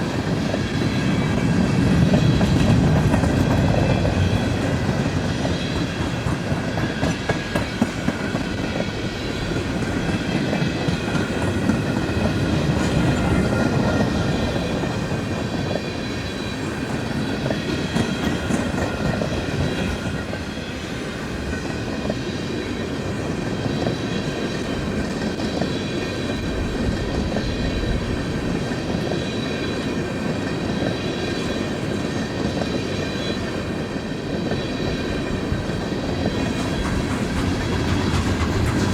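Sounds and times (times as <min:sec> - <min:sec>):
freight train rolling past: 0:00.0 - 0:38.9
wheels clicking over rail joints: 0:35.0 - 0:38.9.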